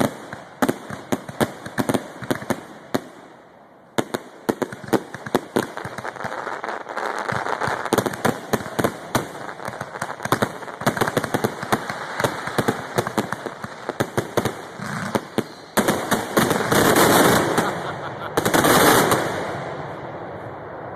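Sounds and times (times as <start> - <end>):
fireworks bangs and cracks: 0.0 - 3.4, 4.0 - 20.9
continuous noise swells: 0.0 - 20.9.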